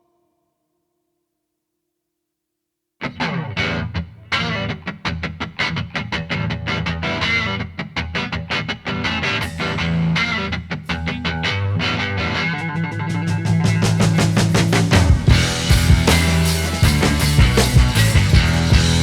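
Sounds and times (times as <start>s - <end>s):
rock music with electric guitar: 3.0s - 19.0s.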